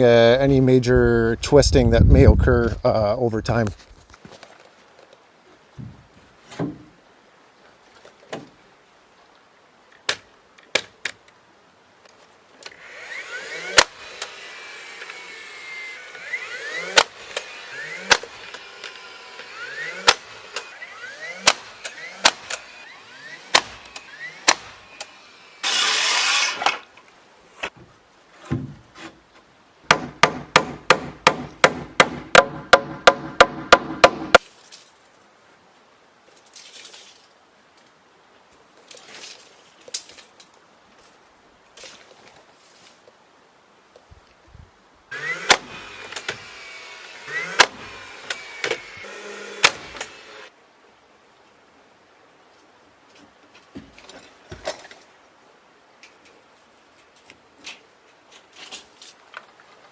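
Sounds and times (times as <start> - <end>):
hammer striking wood: 23.5 - 24.7, 29.9 - 34.4.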